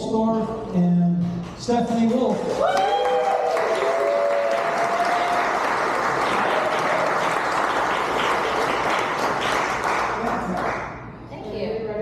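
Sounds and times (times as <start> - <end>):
crowd applauding: 2.0 - 11.0
crowd cheering: 2.4 - 10.6.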